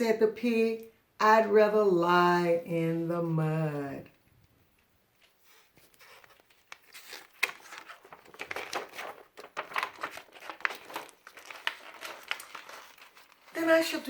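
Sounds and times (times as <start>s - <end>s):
crinkling and rustling: 4.2s - 14.0s.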